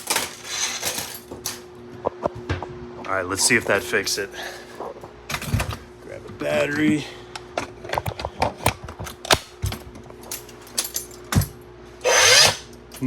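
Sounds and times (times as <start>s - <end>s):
nailer motor whirring: 12.0s - 12.7s.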